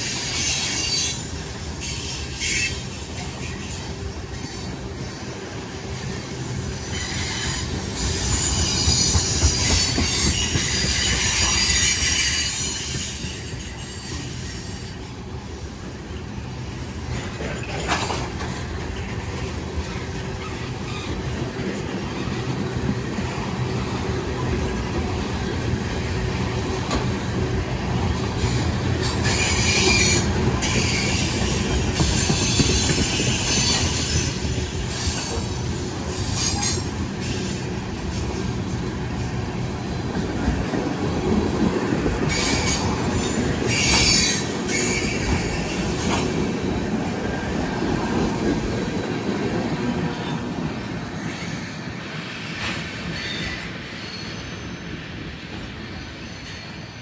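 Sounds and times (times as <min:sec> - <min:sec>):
high wheel squeal: 0:00.0 - 0:22.3, 0:26.1 - 0:57.0
freight train rumbling past: 0:00.0 - 0:57.0
wheels clattering over rail joints: 0:17.0 - 0:23.2.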